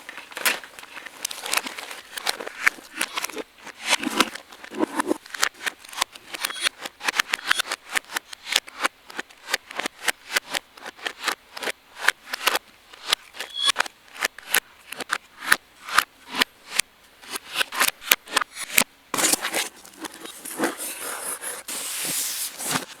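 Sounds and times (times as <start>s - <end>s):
packaging crinkling: 0.0s - 5.8s, 19.2s - 23.0s
continuous rustle: 0.0s - 6.6s, 19.1s - 23.0s.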